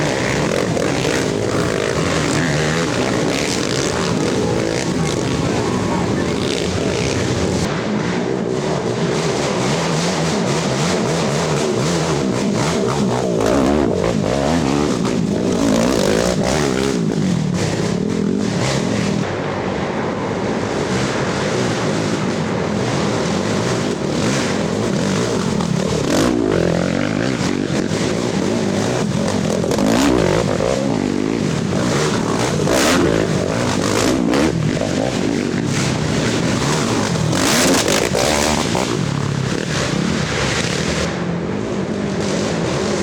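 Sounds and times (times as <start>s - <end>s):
atv engines revving: 0.0s - 19.6s, 20.4s - 43.0s.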